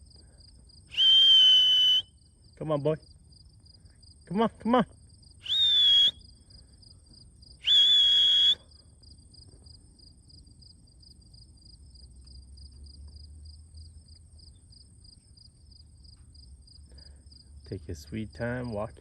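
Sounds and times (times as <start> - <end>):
crickets chirping: 0.0 - 19.0
high insect trill: 0.0 - 19.0
loud whistle: 0.9 - 2.2, 5.4 - 6.3, 7.6 - 8.7.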